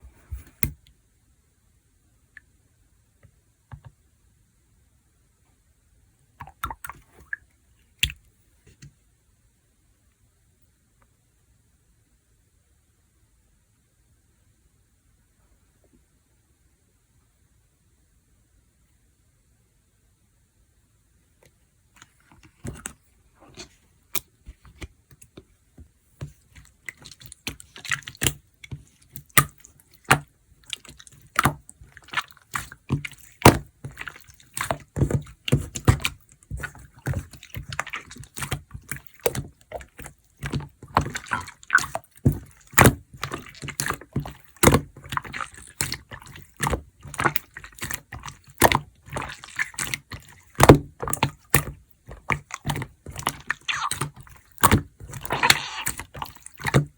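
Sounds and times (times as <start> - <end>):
slime squishing with wet pops: 6.4 - 8.9, 22.0 - 56.9.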